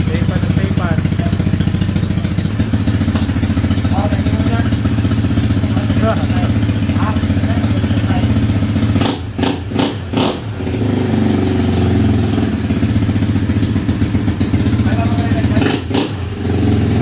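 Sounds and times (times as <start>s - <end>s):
scooter engine running: 0.0s - 17.0s.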